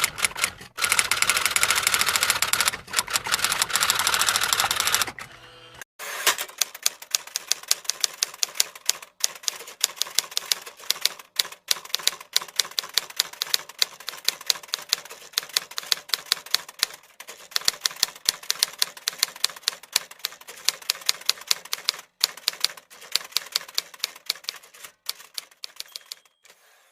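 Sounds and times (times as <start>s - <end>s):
typewriter keys clacking: 6.4s - 26.5s.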